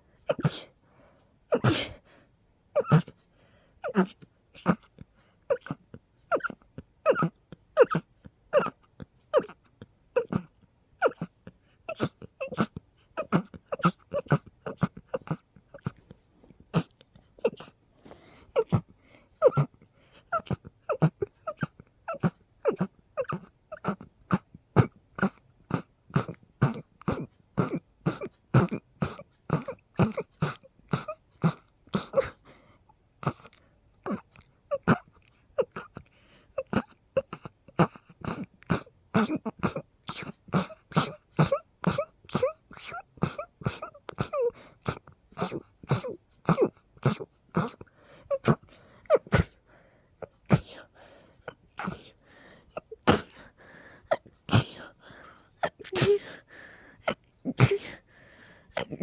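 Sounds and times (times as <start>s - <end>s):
person sneezing: 0.3s - 0.8s, 1.5s - 2.0s, 38.3s - 49.6s, 50.2s - 50.9s, 51.8s - 53.5s, 54.1s - 56.4s, 57.0s - 58.0s.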